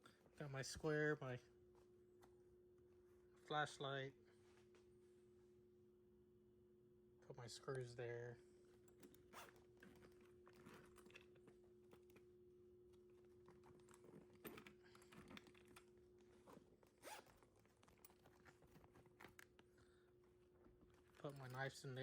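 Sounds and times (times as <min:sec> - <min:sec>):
bag fabric rustling: 0:08.8 - 0:12.1, 0:13.1 - 0:19.6.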